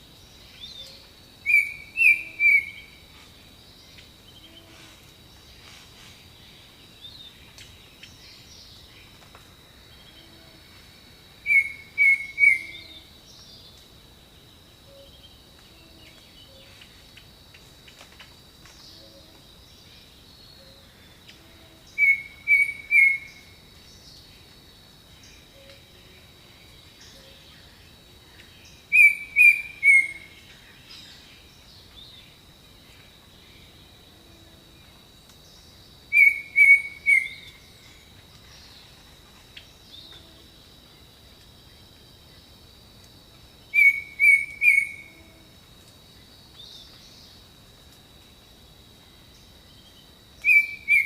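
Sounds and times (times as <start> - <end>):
faint bird calls: 36.1 - 40.5, 43.7 - 45.5.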